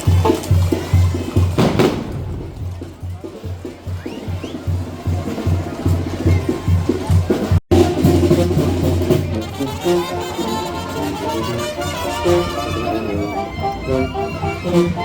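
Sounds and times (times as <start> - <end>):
steady drum beat: 0.0 - 11.1
brass melody: 7.4 - 15.0.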